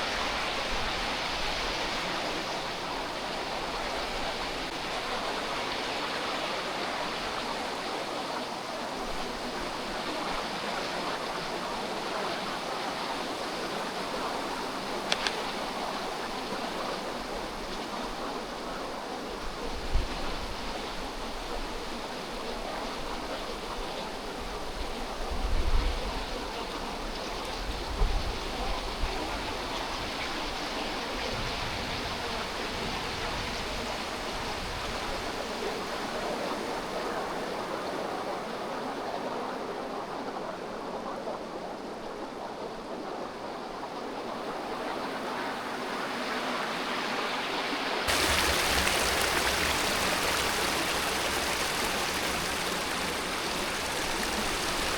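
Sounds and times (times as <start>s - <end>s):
rushing water: 0.0s - 25.2s, 42.4s - 54.9s.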